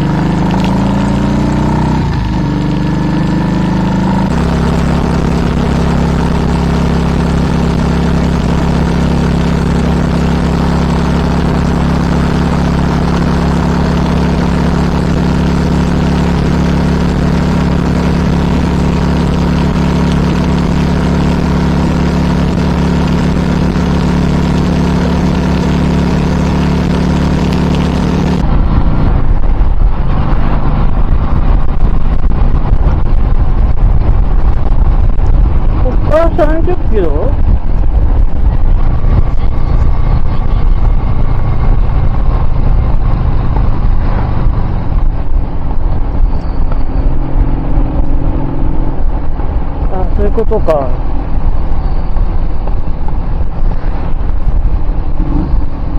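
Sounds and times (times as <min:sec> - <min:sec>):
rough low rumble: 0:00.0 - 0:55.9
vehicle engine running: 0:00.0 - 0:55.9.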